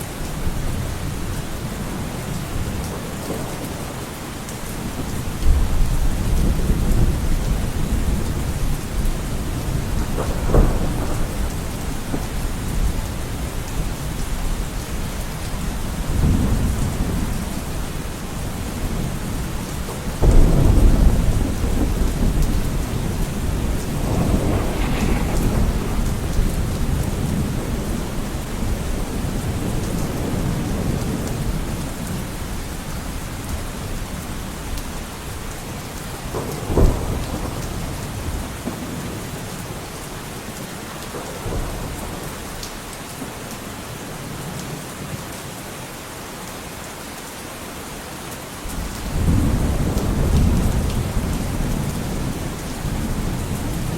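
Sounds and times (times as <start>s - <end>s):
steady rain falling: 0.0s - 53.9s
thunder rumbling: 4.8s - 32.5s, 48.7s - 53.9s.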